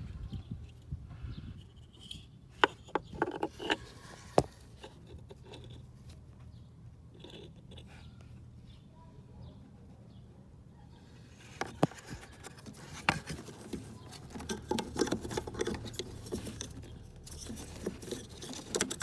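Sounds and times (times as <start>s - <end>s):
faint low hum: 0.0s - 19.0s
small parts clicking and knocking: 1.9s - 5.8s, 11.6s - 19.0s.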